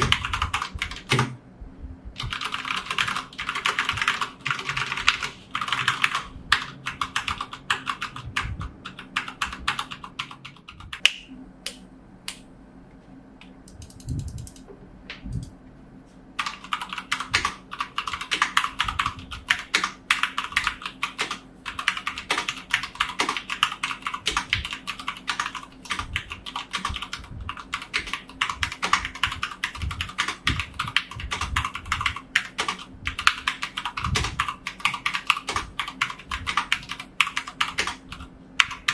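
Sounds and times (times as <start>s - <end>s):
mechanical keyboard typing: 0.0s - 1.4s, 2.2s - 11.0s, 13.6s - 14.7s, 16.4s - 38.9s.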